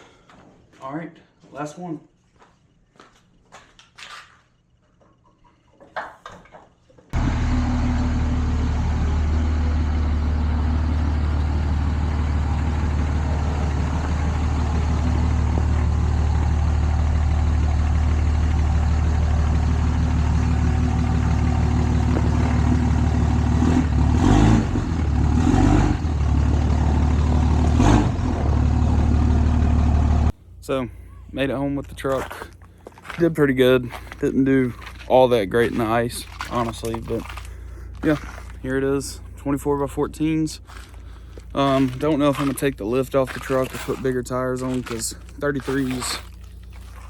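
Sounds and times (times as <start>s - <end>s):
diesel truck engine droning: 7.2s - 47.0s.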